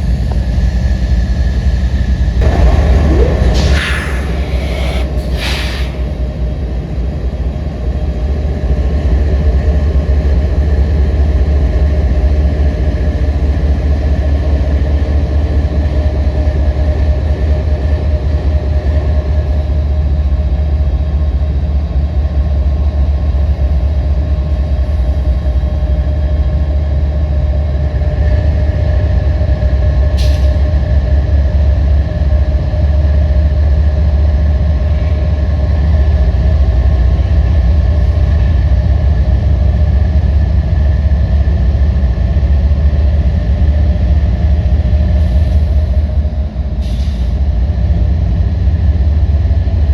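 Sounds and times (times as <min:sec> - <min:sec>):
model locomotive diesel drone: 0:00.0 - 0:49.9
short hiss: 0:03.2 - 0:06.2.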